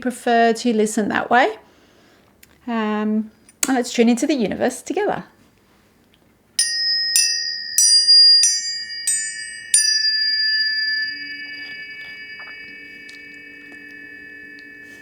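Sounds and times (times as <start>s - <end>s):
low steady tones: 6.6s - 15.0s
tuning forks ringing: 6.6s - 15.0s.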